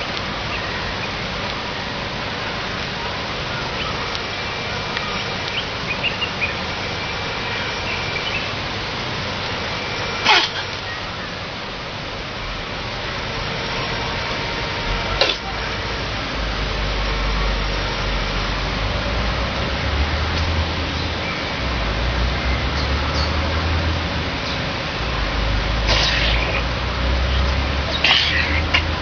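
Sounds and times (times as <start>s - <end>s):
steady hiss: 0.0s - 29.0s
chimpanzee sneezing and coughing: 10.2s - 10.7s, 25.9s - 26.6s, 27.9s - 28.9s.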